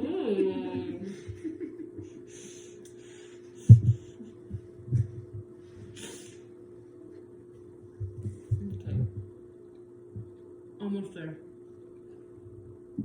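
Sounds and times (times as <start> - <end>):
steady low hum: 0.0 - 13.0
soft low thumps: 3.6 - 6.0, 7.8 - 9.4, 10.1 - 10.4, 12.4 - 13.0.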